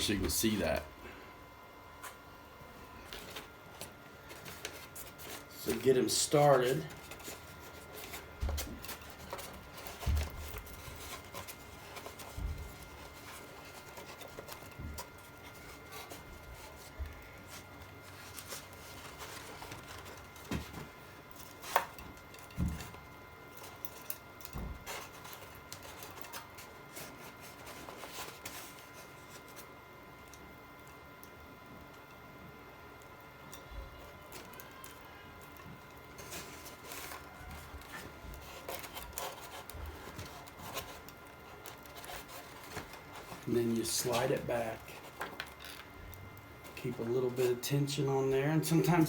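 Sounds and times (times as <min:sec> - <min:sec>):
rubbing on foam and plastic: 0:04.2 - 0:22.0, 0:36.1 - 0:47.6.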